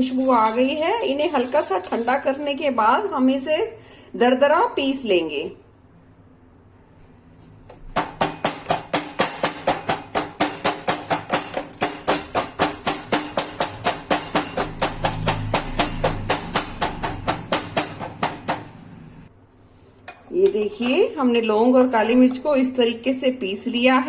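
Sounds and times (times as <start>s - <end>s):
pestle pounding spices in mortar: 7.7s - 18.9s.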